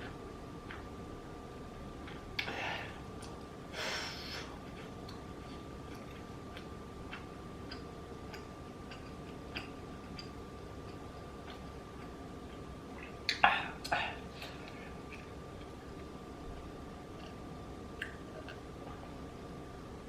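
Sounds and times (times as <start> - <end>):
chewing with wet mouth clicks: 0.0 - 1.0, 4.6 - 19.1.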